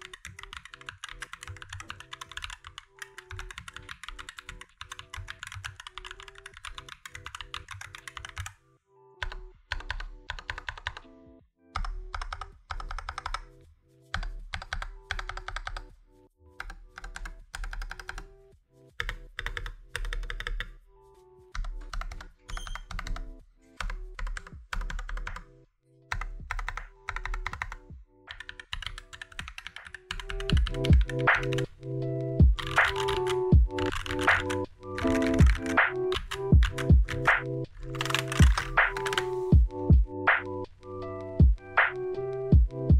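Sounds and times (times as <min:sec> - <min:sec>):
mechanical keyboard keystrokes: 0:00.0 - 0:08.5, 0:09.2 - 0:11.0, 0:26.1 - 0:31.7, 0:32.6 - 0:39.4
background music: 0:00.0 - 0:42.9.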